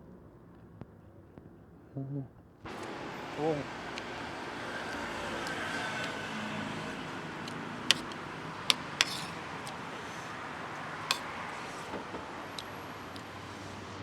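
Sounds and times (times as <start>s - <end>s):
cutlery clinking on a plate: 2.7s - 13.6s
street traffic hum: 2.7s - 14.0s.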